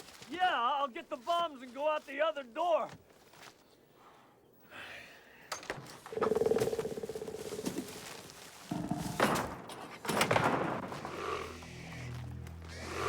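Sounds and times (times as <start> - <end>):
loud rasping creature calls: 11.0 - 13.0
pulsing buzzing creature trill: 11.0 - 13.0.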